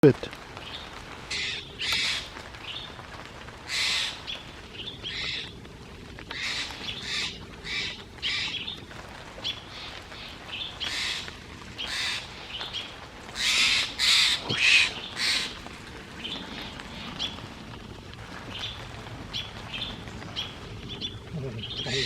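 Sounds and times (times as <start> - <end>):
jay harsh scolding calls: 10.8 - 12.3, 13.4 - 15.6.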